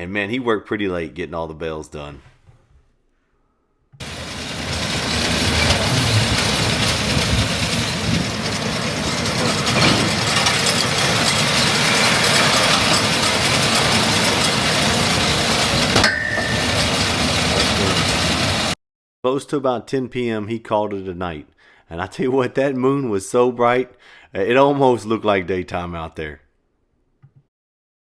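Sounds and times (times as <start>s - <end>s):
tractor and baler clatter: 4.0s - 18.8s.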